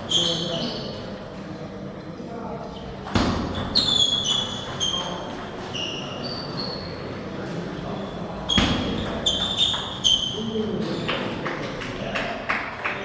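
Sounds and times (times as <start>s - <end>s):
murmur of sports hall: 0.0s - 13.0s
table tennis ball hits: 3.1s - 5.6s, 8.6s - 11.4s.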